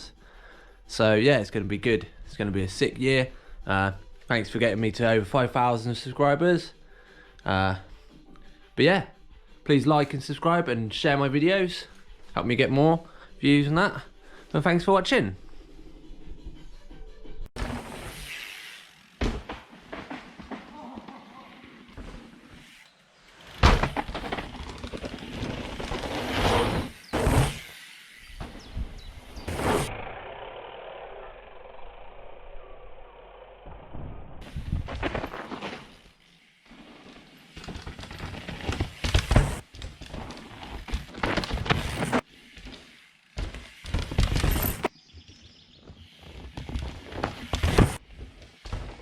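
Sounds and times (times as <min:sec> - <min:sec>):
bike tyres on dirt: 0:17.6 - 0:49.0
wind noise: 0:34.3 - 0:35.1.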